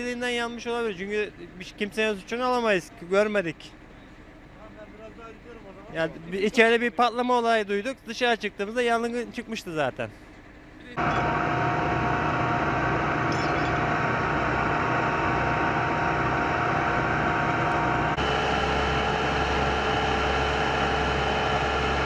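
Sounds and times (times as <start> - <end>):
mechanical drone humming: 10.9 - 22.0.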